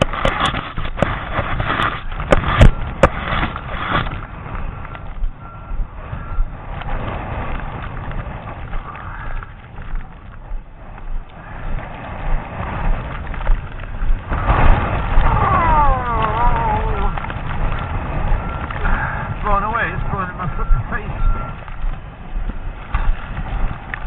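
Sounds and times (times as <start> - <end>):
storm wind on microphone: 0.0 - 24.0
faint reversing alarm beeps: 1.9 - 7.3, 17.8 - 23.1.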